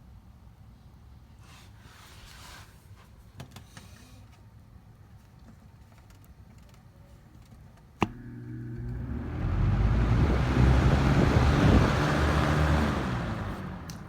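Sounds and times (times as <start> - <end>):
fan motor humming: 8.0 - 14.0
fan air whoosh: 8.1 - 14.0.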